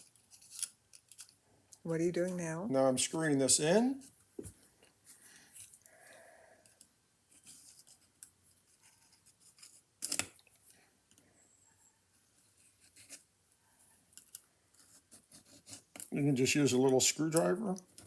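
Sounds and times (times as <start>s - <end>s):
small metal scraping and clicking: 0.0s - 1.8s, 6.6s - 11.3s, 14.0s - 18.0s.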